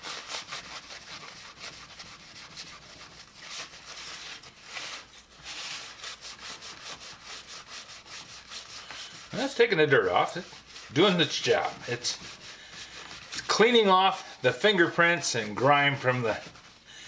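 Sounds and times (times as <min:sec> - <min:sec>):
hand scrubbing plastic case: 0:00.0 - 0:16.9.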